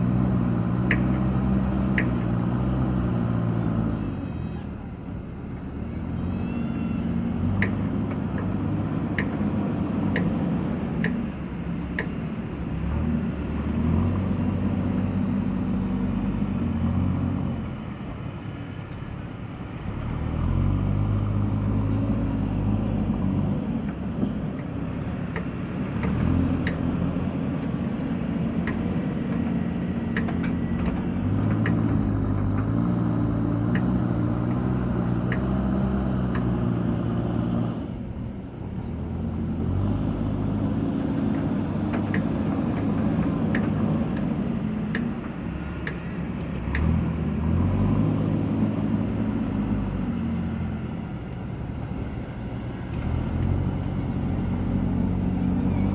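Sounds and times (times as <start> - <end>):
diesel engine working: 0.0 - 55.9
light clicks and knocks: 30.1 - 32.8.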